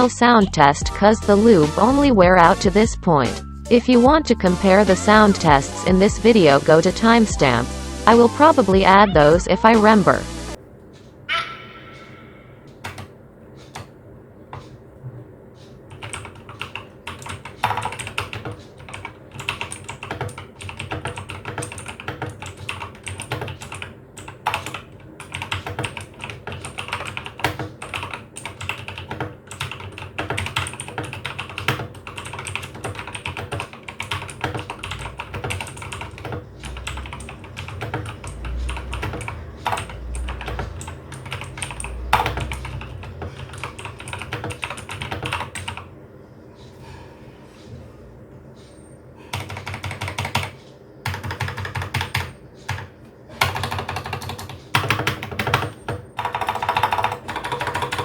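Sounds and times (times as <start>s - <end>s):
mechanical keyboard clicks: 15.9s - 45.8s, 49.3s - 58.0s.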